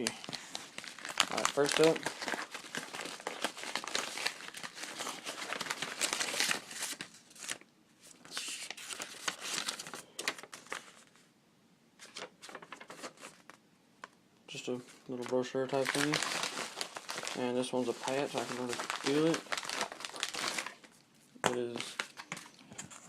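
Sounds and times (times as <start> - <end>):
plastic packaging crinkling and tearing: 0.0 - 11.0, 12.0 - 13.6, 15.2 - 23.0.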